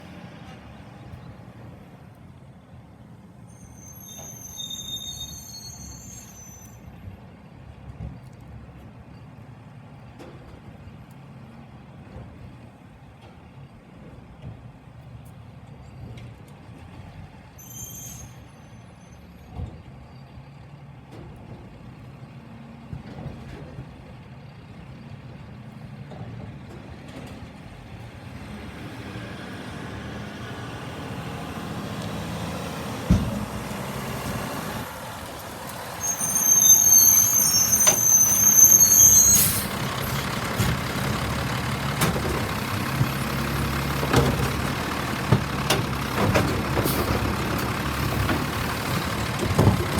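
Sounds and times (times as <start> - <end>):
high-pitched brake squeal: 3.5 - 7.1, 17.6 - 20.4, 35.8 - 40.2
truck diesel engine running: 27.6 - 49.9.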